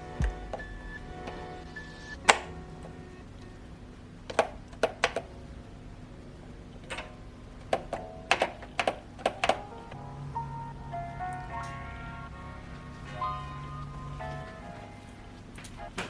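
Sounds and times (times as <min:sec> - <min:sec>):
keyboard keystroke clicks: 0:07.7 - 0:09.8.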